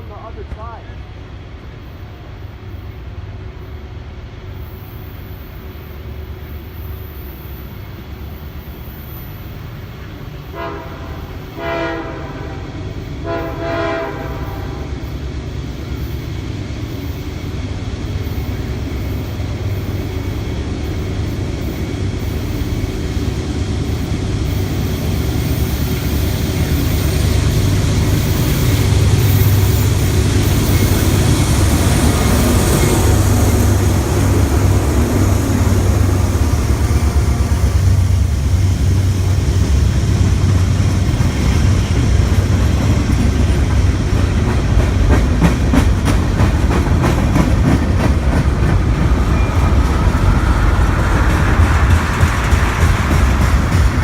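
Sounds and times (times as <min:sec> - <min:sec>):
train rumble: 0:00.0 - 0:54.0
train horn blasts: 0:10.5 - 0:15.0.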